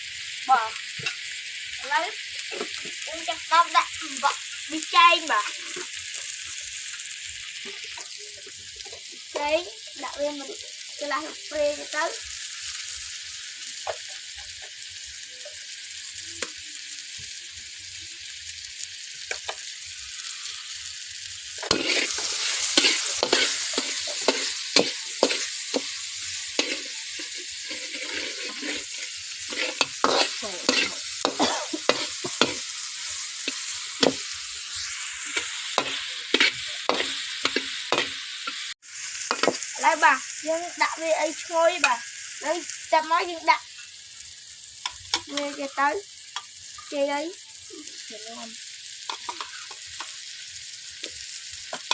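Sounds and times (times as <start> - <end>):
food sizzling in a hot pan: 0.0 - 51.9
spatula scraping a pan: 21.6 - 38.7, 49.1 - 50.1.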